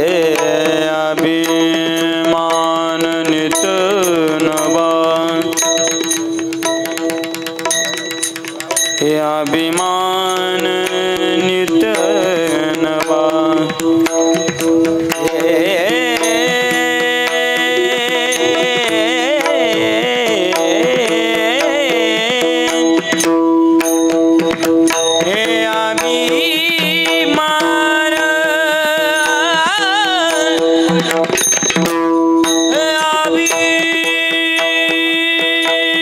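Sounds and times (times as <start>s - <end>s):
drum strokes: 0.0s - 36.0s
man singing devotional song: 0.0s - 36.0s.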